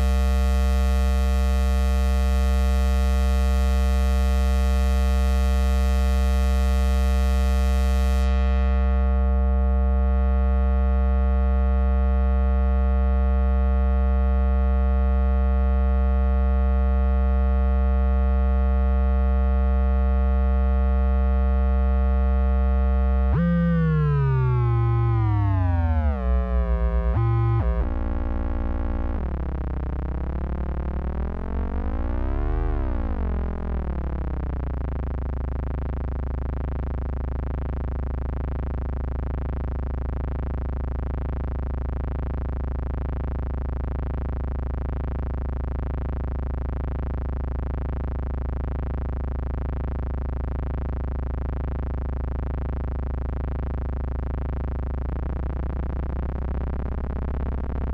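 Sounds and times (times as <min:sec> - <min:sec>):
synthesizer drone: 0:23.3 - 0:34.9.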